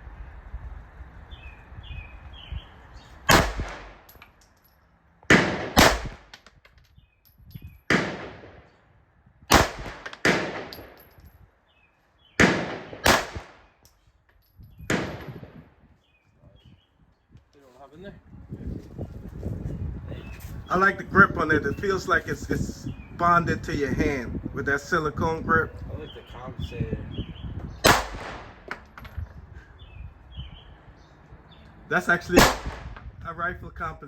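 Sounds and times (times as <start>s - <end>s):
handgun shots with echo: 3.3s - 4.3s, 5.3s - 6.6s, 9.5s - 11.1s, 12.4s - 13.8s, 14.9s - 15.6s, 27.8s - 28.9s, 32.4s - 33.0s.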